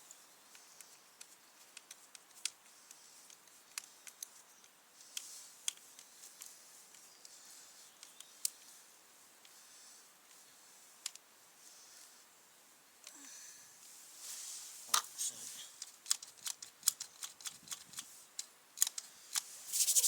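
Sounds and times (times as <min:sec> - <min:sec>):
small parts clicking and tapping: 0:00.0 - 0:07.4, 0:08.0 - 0:08.7, 0:11.0 - 0:11.3, 0:15.8 - 0:20.0.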